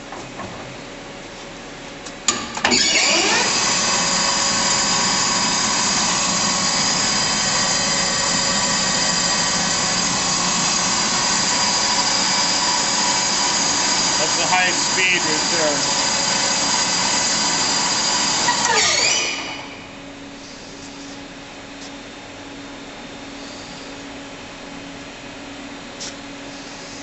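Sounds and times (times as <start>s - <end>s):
lathe spindle gear whine: 2.3s - 21.1s.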